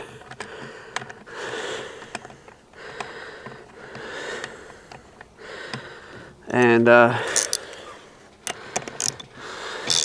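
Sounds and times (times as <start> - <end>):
person breathing: 2.8 - 6.4, 7.1 - 10.0
handling clicks: 6.6 - 7.8, 8.4 - 10.0.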